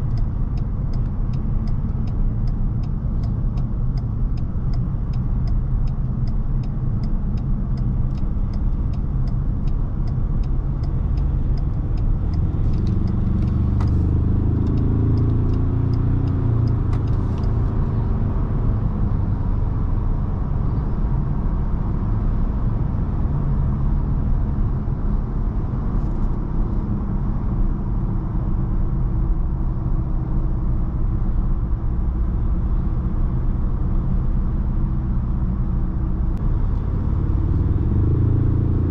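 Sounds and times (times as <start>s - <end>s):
car engine and road rumble: 0.0s - 38.9s
regular ticking: 0.1s - 17.9s.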